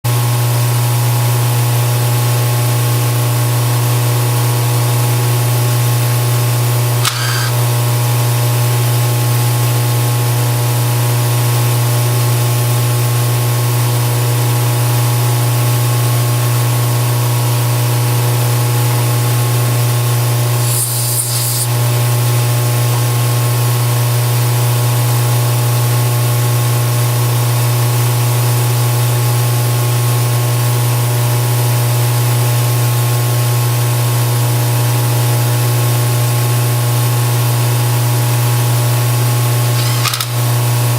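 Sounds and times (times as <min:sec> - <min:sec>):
machine motor humming: 0:07.0 - 0:07.8, 0:20.5 - 0:21.8.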